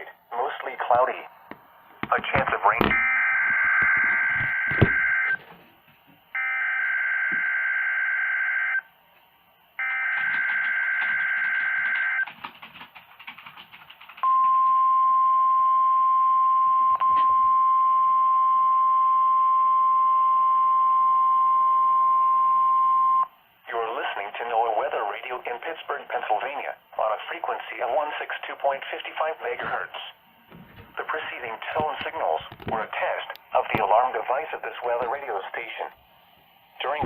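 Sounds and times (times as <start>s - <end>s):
steady alarm tone: 2.9s - 5.4s, 6.3s - 8.9s, 9.8s - 12.2s.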